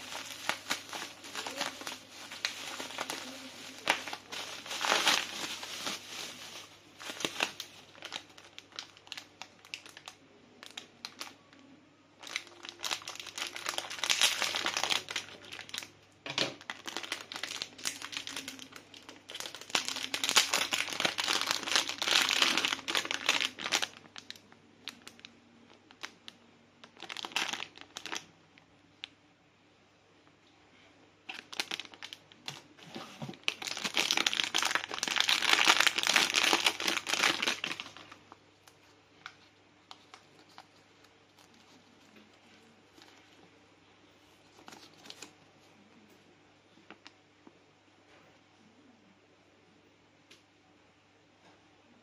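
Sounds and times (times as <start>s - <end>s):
plastic packaging crinkling: 0.0s - 11.5s, 12.2s - 28.3s, 31.3s - 43.4s, 44.3s - 45.4s.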